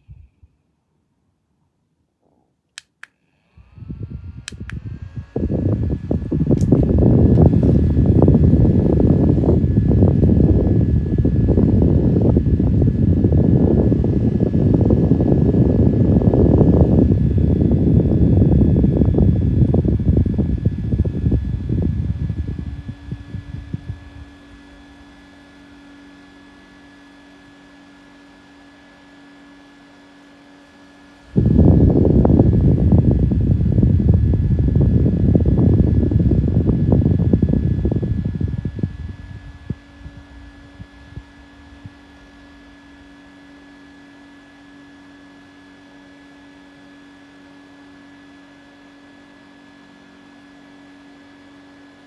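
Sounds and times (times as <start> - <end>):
handheld fan humming: 2.8 - 52.0
airflow buffeting microphone: 3.6 - 26.1, 30.7 - 44.0.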